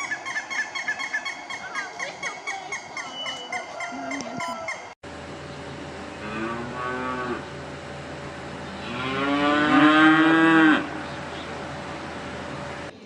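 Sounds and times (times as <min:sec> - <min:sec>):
cow mooing: 0:06.2 - 0:07.5, 0:08.7 - 0:11.3.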